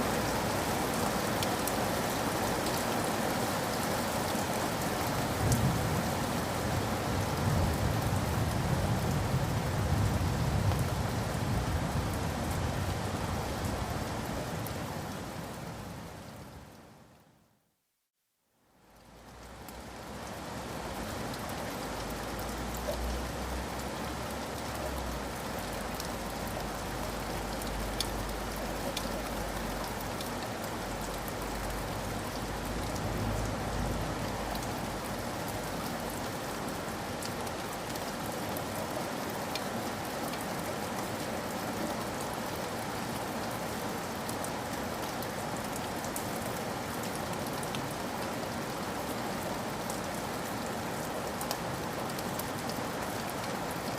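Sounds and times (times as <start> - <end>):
rain falling: 0.0 - 17.5, 18.6 - 53.9
raindrop ticks: 27.4 - 35.6.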